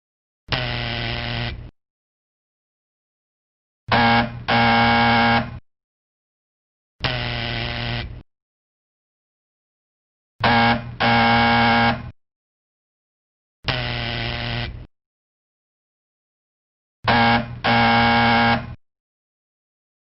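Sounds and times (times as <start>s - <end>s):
electric doorbell buzzer: 0.5s - 1.6s, 3.9s - 5.6s, 7.0s - 8.2s, 10.4s - 12.1s, 13.7s - 14.8s, 17.1s - 18.8s.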